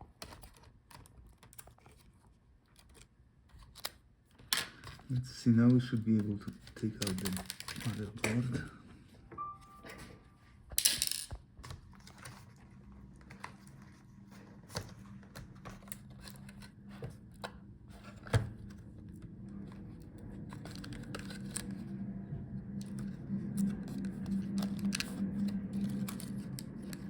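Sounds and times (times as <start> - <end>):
laptop parts and tools clicking: 0.1 - 8.6, 14.7 - 21.9, 22.7 - 27.0
faint low hum: 4.8 - 27.0.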